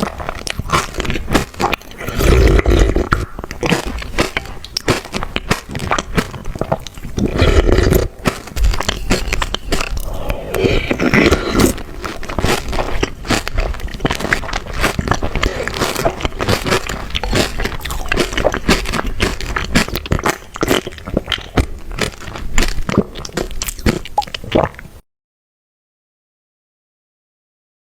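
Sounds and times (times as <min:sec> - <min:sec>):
chocolate crunching while chewed: 0:00.0 - 0:24.8.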